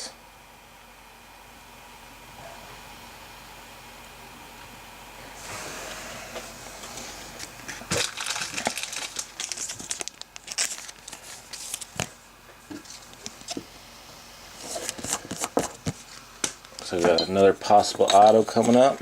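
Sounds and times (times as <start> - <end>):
foil wrapper tearing and crinkling: 7.8 - 12.1.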